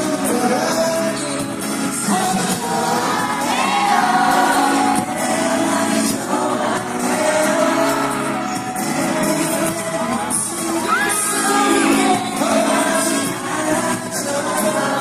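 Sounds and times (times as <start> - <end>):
man singing: 0.0 - 15.0
pop backing music: 0.0 - 15.0
crowd shouts: 2.0 - 5.2, 8.0 - 13.6.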